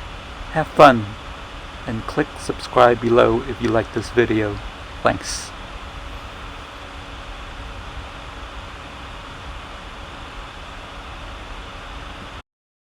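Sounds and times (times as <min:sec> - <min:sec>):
even hiss: 0:00.0 - 0:12.0
faint steady hum: 0:00.0 - 0:12.4.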